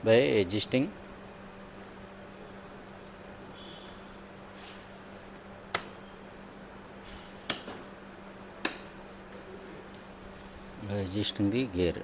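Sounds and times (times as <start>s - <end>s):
steady low hum: 0.0s - 12.0s
sharp relay clicks: 5.6s - 6.3s, 7.1s - 8.0s, 8.6s - 9.2s.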